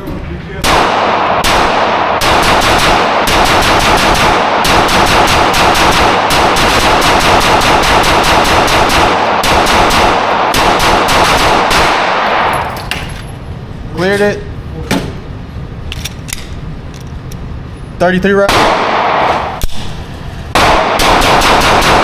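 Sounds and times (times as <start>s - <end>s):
rapid gunfire: 0.6s - 12.5s, 18.5s - 19.9s, 20.6s - 22.0s.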